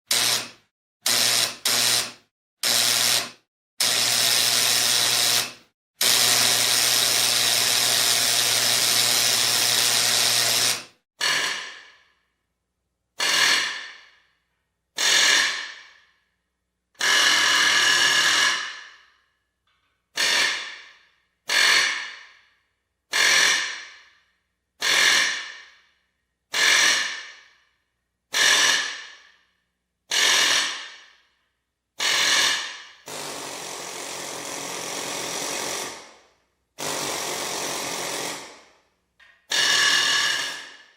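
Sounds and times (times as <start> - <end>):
electric welding bursts: 0.1 - 10.9
electric drill: 0.1 - 11.8, 13.2 - 13.9, 15.0 - 15.8, 17.0 - 18.9, 20.2 - 20.8, 21.5 - 22.2, 23.1 - 23.8, 24.8 - 25.5, 26.5 - 27.2, 28.3 - 29.0, 30.1 - 30.8, 32.0 - 36.2, 36.8 - 38.6, 39.5 - 40.9.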